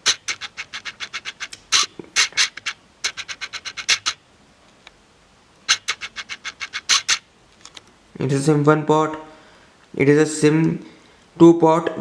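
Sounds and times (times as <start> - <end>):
quick scratching strokes: 0.0 - 4.2, 5.7 - 7.2.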